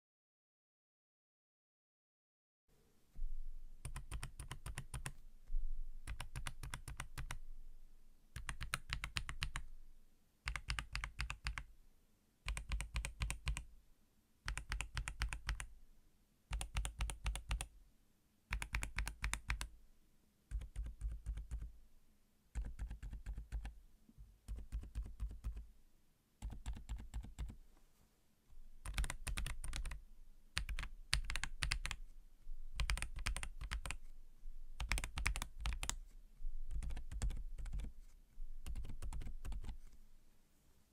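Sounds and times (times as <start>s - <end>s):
mechanical keyboard typing: 3.8s - 5.2s, 6.1s - 7.4s, 8.4s - 9.6s, 10.5s - 11.7s, 12.5s - 13.6s, 14.5s - 15.7s, 16.5s - 17.7s, 18.5s - 19.7s, 20.5s - 21.7s, 22.6s - 23.7s, 24.5s - 25.6s, 26.4s - 27.6s, 28.8s - 30.0s, 30.6s - 32.0s, 32.8s - 34.0s, 34.8s - 36.0s, 36.7s - 37.9s, 38.6s - 39.8s.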